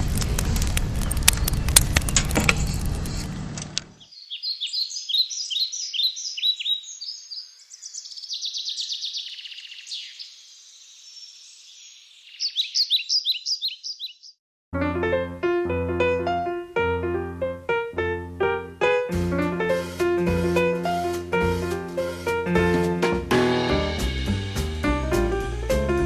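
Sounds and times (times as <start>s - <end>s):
noisy rumble with sharp clicks: 0.0s - 4.0s
birds singing: 3.1s - 14.4s.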